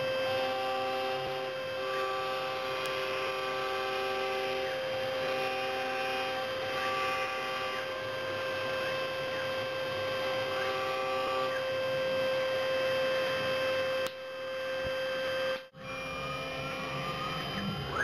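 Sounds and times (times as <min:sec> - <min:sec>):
milling machine motor whine: 0:00.0 - 0:18.0.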